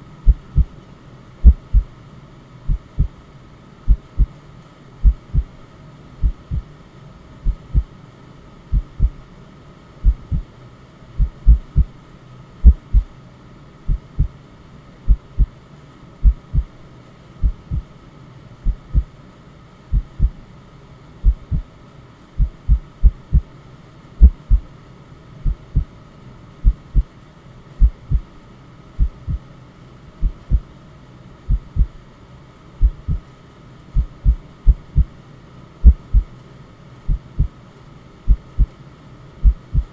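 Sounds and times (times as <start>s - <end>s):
white noise: 0.0s - 39.9s
heartbeat thumping: 0.2s - 0.8s, 1.4s - 1.9s, 2.7s - 3.1s, 3.9s - 4.3s, 5.0s - 5.6s, 6.2s - 6.7s, 7.4s - 7.9s, 8.7s - 9.2s, 10.0s - 10.4s, 11.2s - 11.9s, 12.6s - 13.1s, 13.9s - 14.3s, 15.1s - 15.5s, 16.2s - 16.8s, 17.4s - 17.9s, 18.7s - 19.1s, 19.9s - 20.4s, 21.2s - 21.6s, 22.4s - 23.5s, 24.2s - 24.7s, 25.5s - 25.9s, 26.6s - 27.1s, 27.8s - 28.3s, 29.0s - 29.4s, 30.2s - 30.6s, 31.5s - 32.0s, 32.8s - 33.2s, 34.0s - 35.1s, 35.8s - 36.3s, 37.1s - 37.5s, 38.3s - 38.7s, 39.4s - 39.9s.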